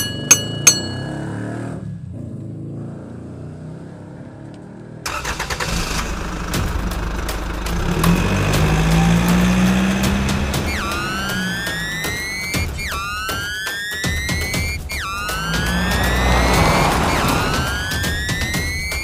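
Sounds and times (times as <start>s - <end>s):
engine rumbling: 0.0s - 19.0s
engine running with clicks and rattles: 4.4s - 13.2s.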